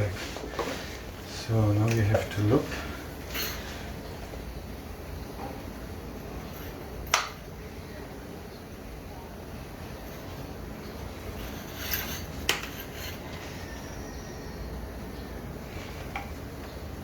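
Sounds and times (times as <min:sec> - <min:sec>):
small parts scraping: 0:11.2 - 0:13.8.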